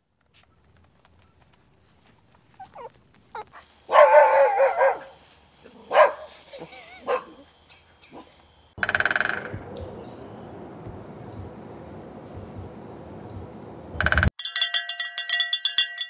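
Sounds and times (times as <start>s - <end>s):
dog yelping: 2.5s - 8.4s
dog whining cry: 2.6s - 5.2s
dog barking: 2.6s - 8.4s.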